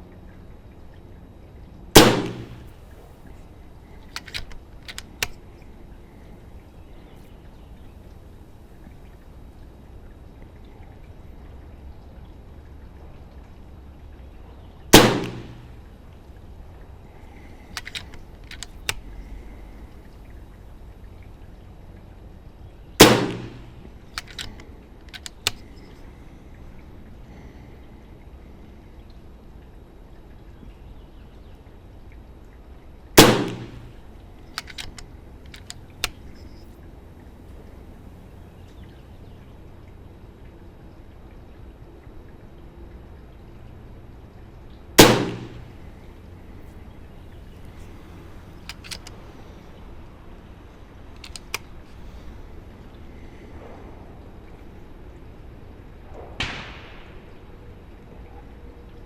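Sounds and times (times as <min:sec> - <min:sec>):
air rifle shot: 0:02.0 - 0:02.8, 0:14.9 - 0:15.8, 0:23.0 - 0:24.5, 0:33.2 - 0:34.0, 0:45.0 - 0:45.8, 0:56.3 - 0:57.3
quick mechanical clicks: 0:02.0 - 0:03.0, 0:04.0 - 0:05.6, 0:14.9 - 0:15.8, 0:17.6 - 0:19.2, 0:23.0 - 0:26.0, 0:33.2 - 0:36.7, 0:48.6 - 0:49.2, 0:51.1 - 0:51.9.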